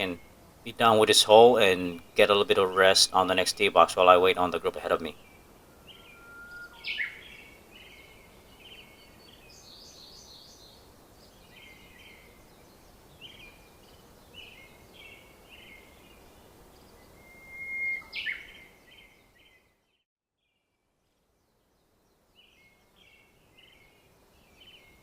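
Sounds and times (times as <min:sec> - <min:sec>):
faint background hiss: 0:00.0 - 0:19.4
songbirds chirping: 0:00.0 - 0:19.9, 0:21.2 - 0:25.0.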